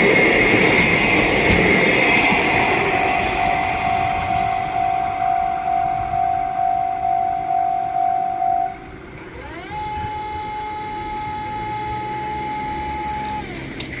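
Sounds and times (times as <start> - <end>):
level crossing warning bell: 0.0 - 9.0
low rumble: 0.0 - 9.1
steady whine: 0.0 - 13.6.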